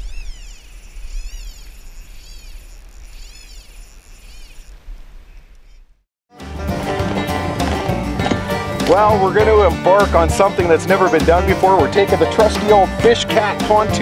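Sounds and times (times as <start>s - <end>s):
high animal calls: 0.0s - 5.8s
music: 6.3s - 14.0s.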